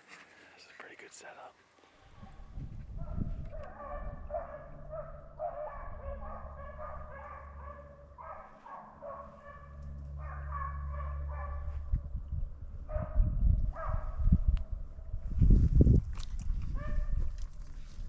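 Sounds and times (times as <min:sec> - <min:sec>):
hounds baying: 0:02.1 - 0:11.9, 0:12.9 - 0:14.2
low rumble: 0:02.2 - 0:18.0.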